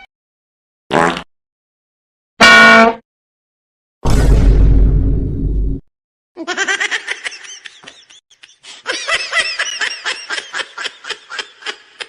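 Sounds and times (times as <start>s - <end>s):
high-pitched giggling laugh: 6.4s - 12.0s.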